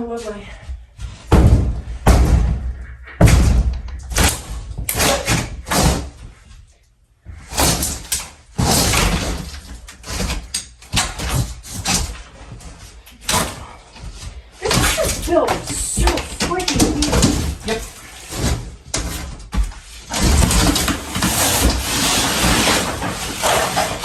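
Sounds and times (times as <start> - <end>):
drywall scraping and crumbling: 0.0 - 24.0
bangs and knocks on wall: 1.2 - 6.2.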